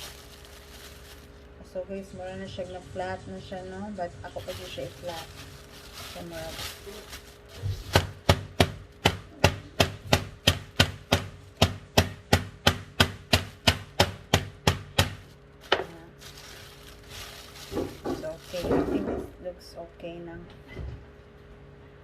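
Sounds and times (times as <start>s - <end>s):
rolling pin pounding meat: 7.6s - 15.8s.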